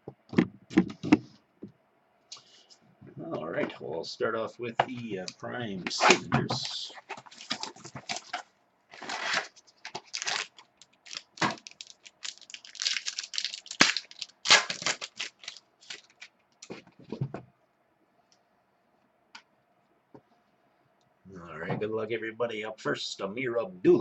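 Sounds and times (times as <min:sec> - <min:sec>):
packaging crinkling and tearing: 0:06.6 - 0:16.8.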